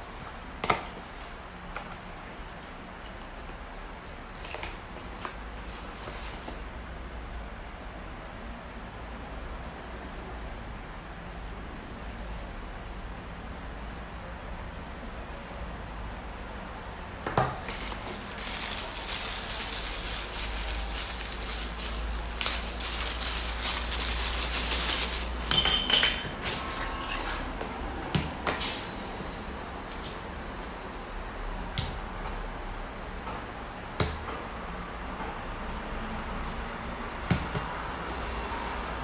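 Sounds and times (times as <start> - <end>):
packaging rustling: 4.3 - 6.7, 17.4 - 27.2.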